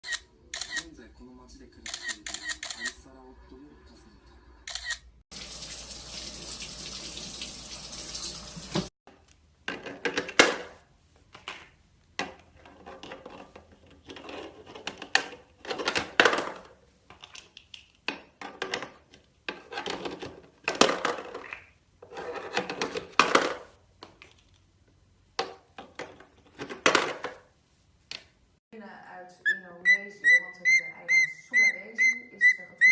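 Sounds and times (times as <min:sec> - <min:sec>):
water running from a tap: 0:05.3 - 0:08.9.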